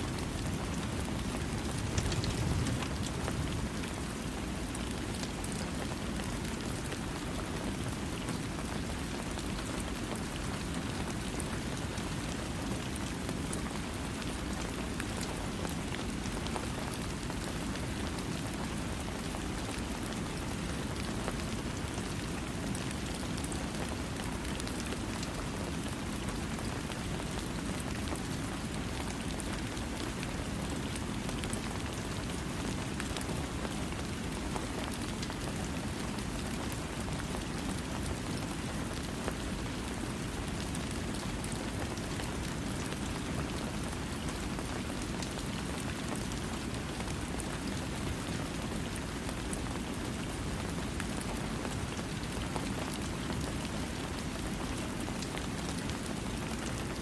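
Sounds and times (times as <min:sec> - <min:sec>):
steady rain hiss: 0:00.0 - 0:57.0
raindrop ticks: 0:01.6 - 0:03.6.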